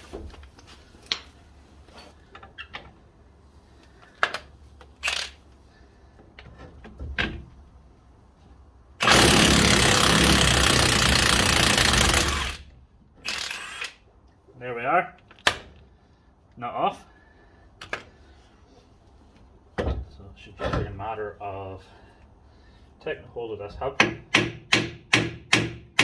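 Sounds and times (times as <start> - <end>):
impact gun hammering: 24.0 - 26.0.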